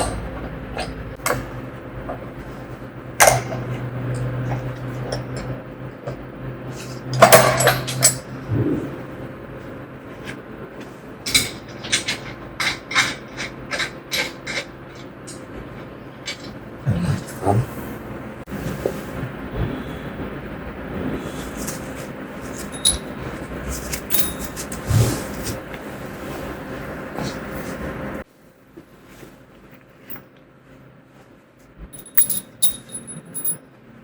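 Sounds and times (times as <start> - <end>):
low steady hum: 16.2 - 28.3, 31.8 - 33.6.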